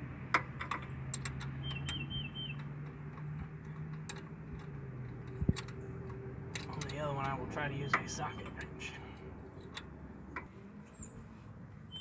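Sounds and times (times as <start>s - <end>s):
wrench clicking on bolts: 0.4s - 8.8s.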